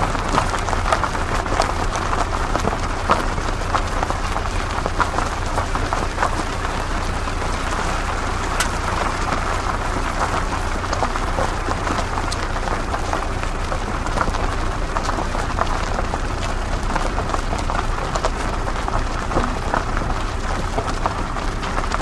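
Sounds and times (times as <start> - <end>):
car engine rumble: 0.0 - 22.0
small clicks: 7.7 - 9.5.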